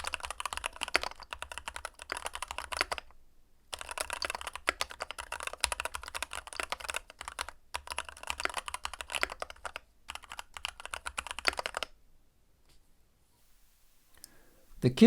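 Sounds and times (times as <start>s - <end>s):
mechanical keyboard typing: 0.0s - 3.1s, 3.7s - 12.0s.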